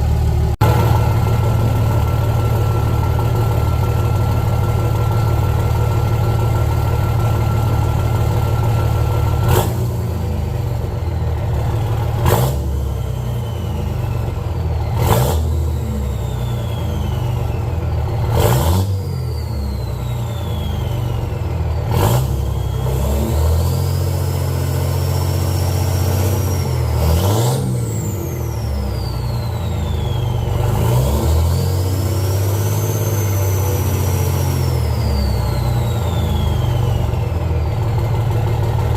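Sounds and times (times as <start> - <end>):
diesel engine running: 0.0 - 38.9
turbo whistle: 14.9 - 17.8, 18.4 - 37.3.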